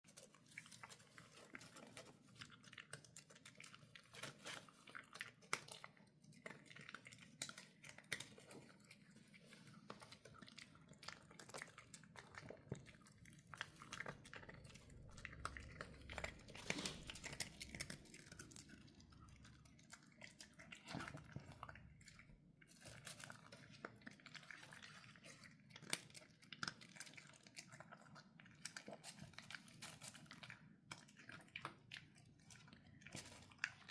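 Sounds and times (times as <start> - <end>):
pet crunching dry kibble: 0.0 - 33.9.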